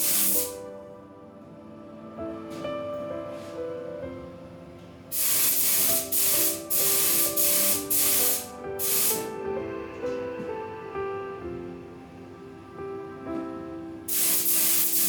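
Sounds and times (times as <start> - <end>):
paint spraying hiss: 0.0 - 0.6, 5.1 - 9.4, 14.1 - 15.0
background music: 0.0 - 15.0.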